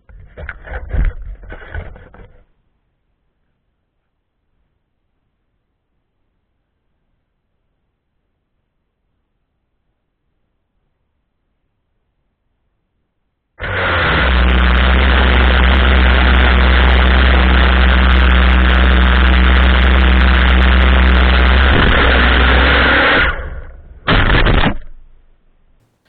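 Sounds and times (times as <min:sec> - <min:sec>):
drone motors and propellers: 0:13.6 - 0:24.9.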